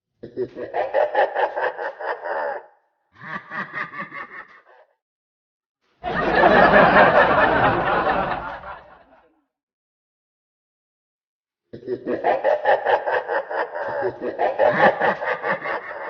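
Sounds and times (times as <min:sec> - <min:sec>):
rhythmic laughter: 0:00.2 - 0:04.9, 0:06.0 - 0:09.3, 0:11.8 - 0:16.0.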